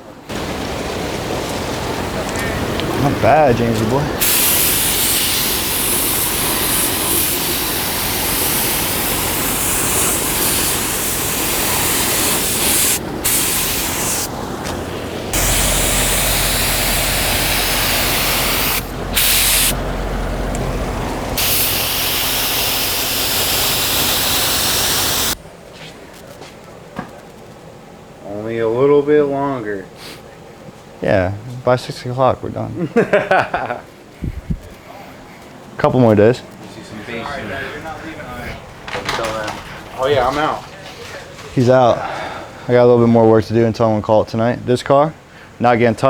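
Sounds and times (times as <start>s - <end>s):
paint spray hissing: 4.2s - 19.8s, 21.2s - 25.4s.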